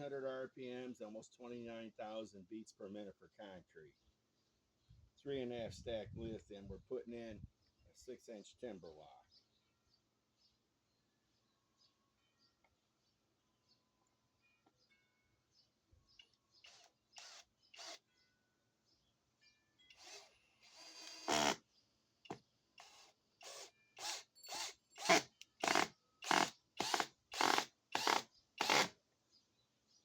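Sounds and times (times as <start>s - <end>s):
drill driver driving a screw: 16.6s - 18.0s, 19.9s - 21.6s, 22.8s - 28.9s.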